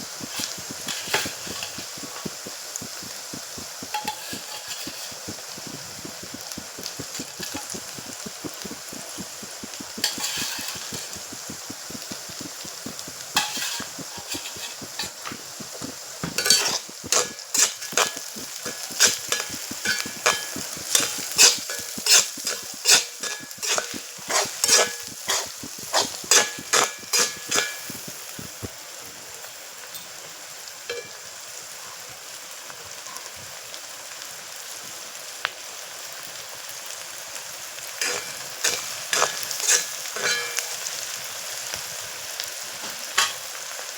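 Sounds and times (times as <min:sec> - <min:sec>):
food sizzling in a frying pan: 0:00.0 - 0:43.9
spatula scraping a pan: 0:00.1 - 0:28.2, 0:37.9 - 0:41.1, 0:42.8 - 0:43.6.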